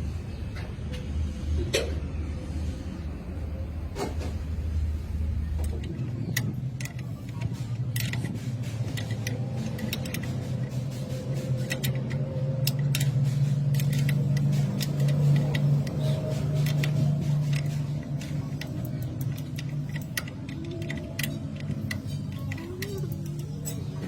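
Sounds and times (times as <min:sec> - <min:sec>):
low mechanical hum: 0:00.0 - 0:24.0
metallic clicks and clinks: 0:05.4 - 0:24.0.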